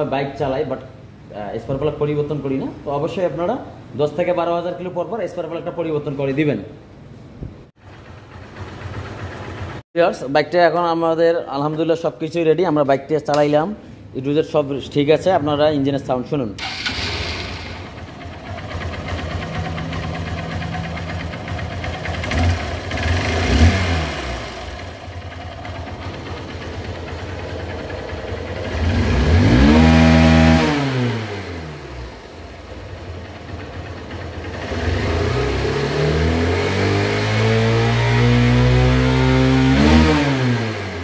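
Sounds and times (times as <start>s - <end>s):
motorcycle engine idling and revving: 7.8s - 9.8s, 16.6s - 41.0s.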